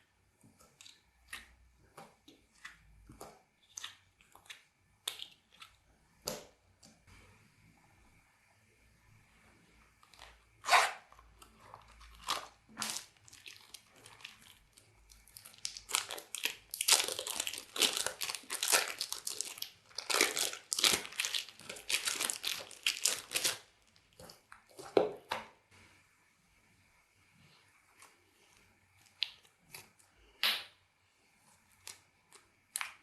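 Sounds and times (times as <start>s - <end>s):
slime crackling and popping: 11.7s - 24.3s.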